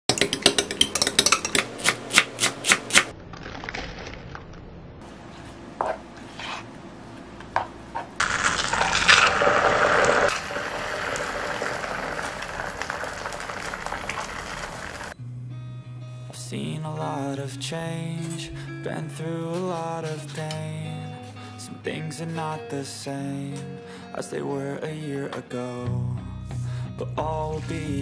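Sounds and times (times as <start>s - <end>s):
utensil tapping: 0.1s - 2.8s.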